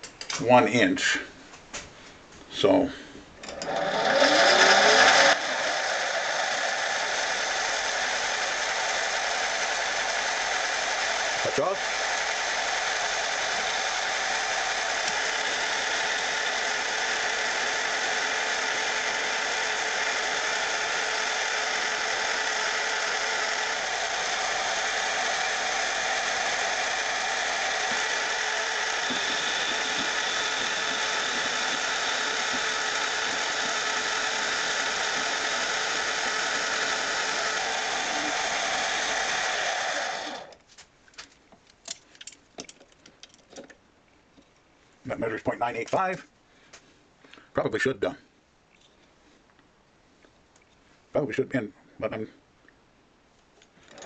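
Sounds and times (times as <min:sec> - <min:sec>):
metal lathe whining: 0:03.4 - 0:40.6.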